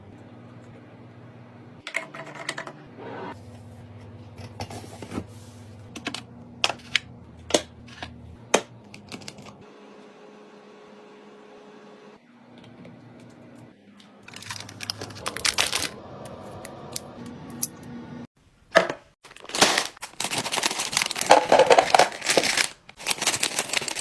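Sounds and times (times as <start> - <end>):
low steady hum: 0.0 - 9.6.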